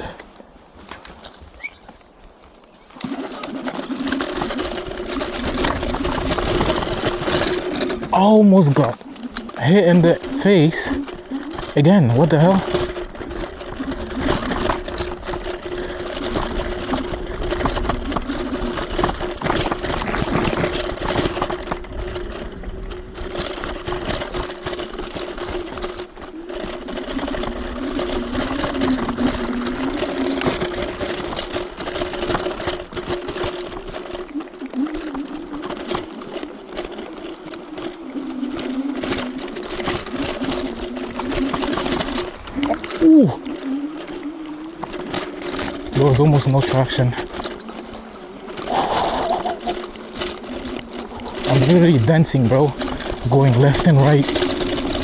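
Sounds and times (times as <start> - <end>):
electric scooter motors whining: 0.0 - 55.0
rattling and knocking: 3.0 - 34.4, 44.8 - 55.0.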